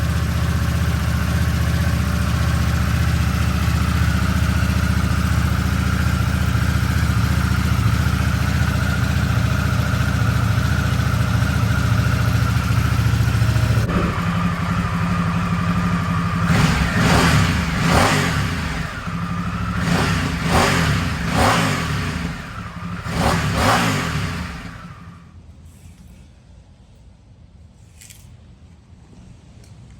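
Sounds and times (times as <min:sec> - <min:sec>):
motorcycle engine idling and revving: 0:00.0 - 0:25.4.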